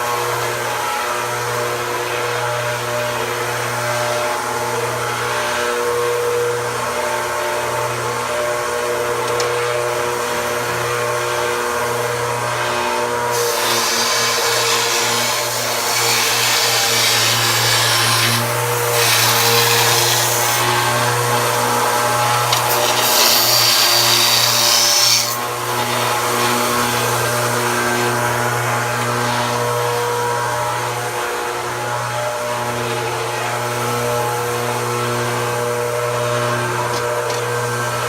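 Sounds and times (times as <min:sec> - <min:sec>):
power tool motor running: 0:06.6 - 0:31.3
metal being cut or abraded: 0:12.6 - 0:29.8.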